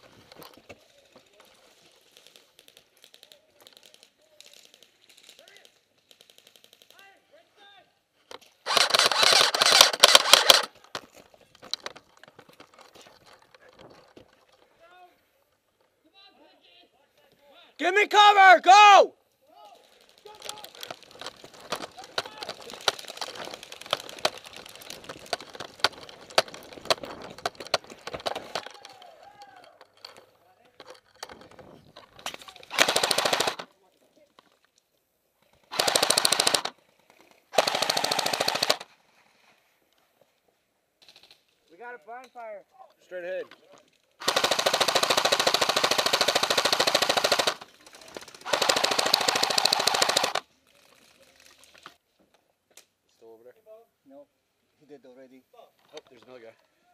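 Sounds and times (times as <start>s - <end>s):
airsoft rifle automatic bursts: 8.6s - 10.7s, 32.7s - 33.7s, 35.7s - 36.8s, 37.5s - 38.9s, 44.2s - 50.4s
airsoft gun shots: 8.7s - 10.7s.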